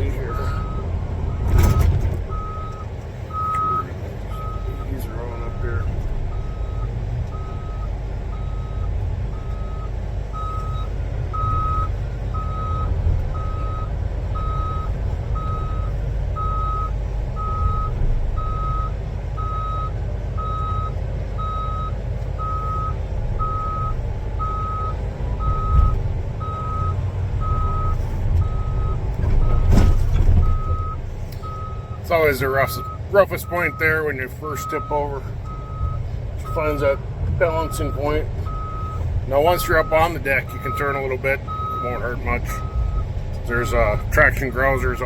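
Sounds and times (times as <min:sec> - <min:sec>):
dozer diesel engine running: 0:00.0 - 0:45.0
reversing alarm beeping: 0:00.2 - 0:29.8, 0:30.5 - 0:45.0
heavy metal clunk: 0:01.3 - 0:02.7, 0:27.7 - 0:31.6.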